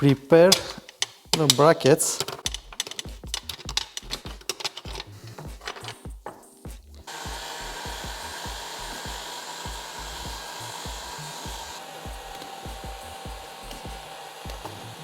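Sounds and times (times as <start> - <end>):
parts clicking and knocking: 0.0 - 7.1
electric tool whirring: 7.1 - 15.0.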